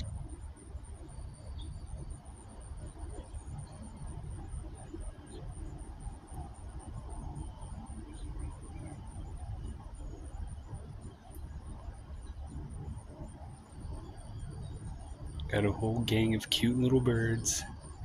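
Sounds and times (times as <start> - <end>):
insects chirping: 12.0 - 18.0.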